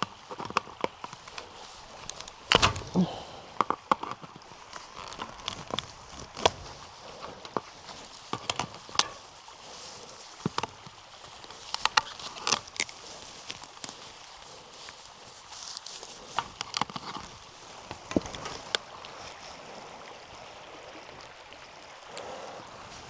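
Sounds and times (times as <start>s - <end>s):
sharp knocks and clicks on fence: 1.4s - 3.6s.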